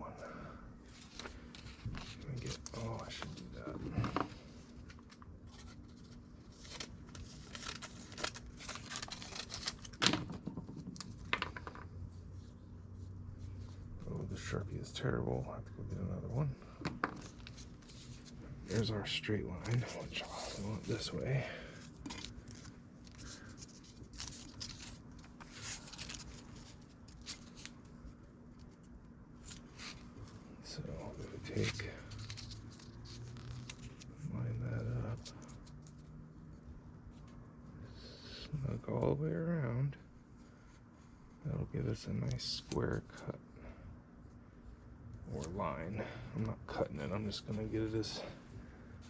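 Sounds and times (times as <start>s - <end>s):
faint steady hum: 0.0s - 49.0s
paper and tape rustling: 0.9s - 11.8s, 17.2s - 36.1s.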